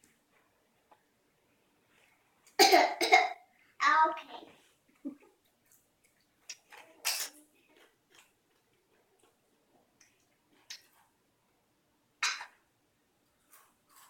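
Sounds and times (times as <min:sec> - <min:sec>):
girl coughing: 0:02.6 - 0:03.4.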